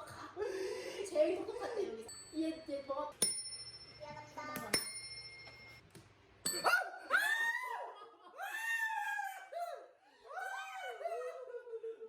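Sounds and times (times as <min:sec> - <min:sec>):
bright bell dings: 0:02.0 - 0:05.8, 0:06.4 - 0:06.8.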